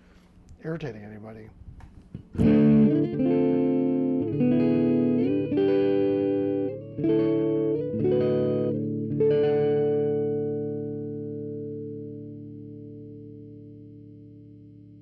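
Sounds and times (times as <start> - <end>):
electric guitar chords: 2.2 - 15.0.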